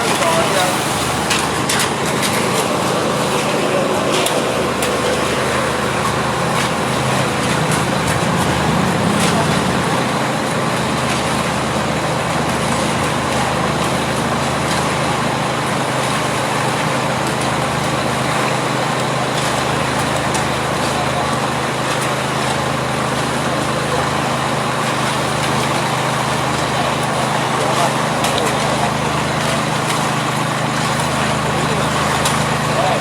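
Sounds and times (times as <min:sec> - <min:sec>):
engine running steadily: 0:00.0 - 0:33.0.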